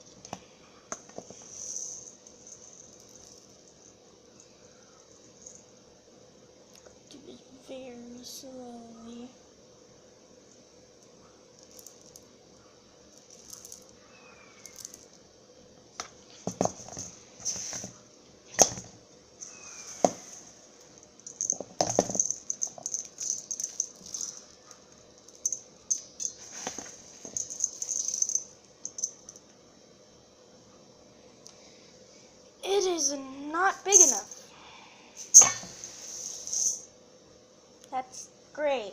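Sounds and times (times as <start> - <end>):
small pieces poured into a cup: 1.3 - 3.6, 13.2 - 14.0, 14.6 - 15.1, 21.3 - 24.6, 25.2 - 29.1, 35.8 - 36.8.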